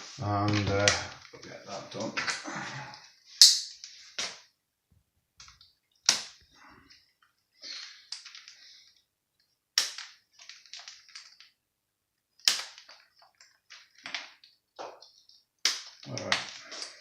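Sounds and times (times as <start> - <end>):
plastic parts snapping together: 9.8 - 11.5, 12.4 - 17.0
rattling and handling noise: 12.7 - 17.0.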